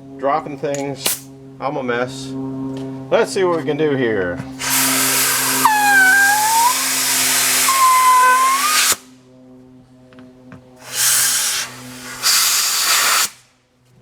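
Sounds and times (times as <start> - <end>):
steady low hum: 0.0 - 14.0
compressed air hissing into tube: 4.6 - 9.0, 10.8 - 13.4.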